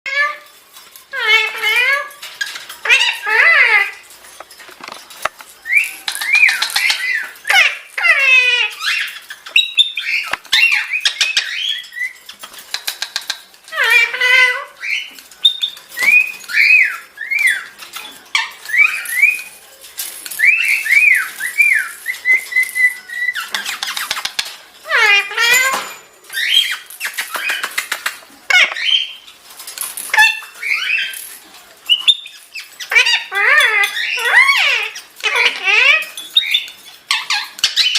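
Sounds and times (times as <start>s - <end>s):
parrot squawks: 1.1s - 2.2s, 2.8s - 4.0s, 5.7s - 12.2s, 13.7s - 17.7s, 20.4s - 27.8s, 28.5s - 29.2s, 30.1s - 31.2s, 31.9s - 37.9s
parrot whistled chirps: 20.4s - 23.7s.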